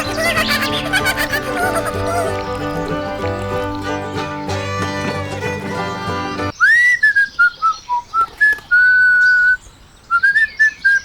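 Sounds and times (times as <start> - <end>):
instrumental background music: 0.0 - 6.5.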